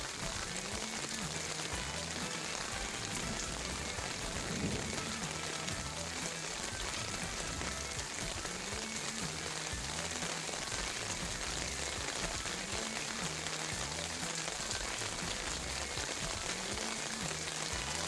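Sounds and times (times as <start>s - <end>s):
heavy rain on leaves: 0.0s - 18.0s.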